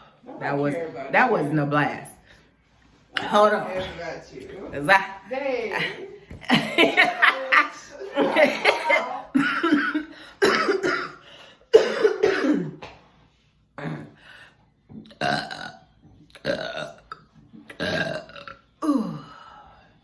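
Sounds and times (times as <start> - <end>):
woman burping: 8.1 - 12.8, 13.8 - 14.2, 15.0 - 19.4.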